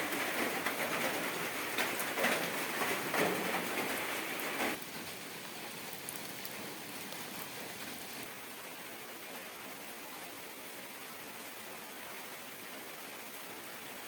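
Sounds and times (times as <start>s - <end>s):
rain hissing: 0.0s - 14.0s.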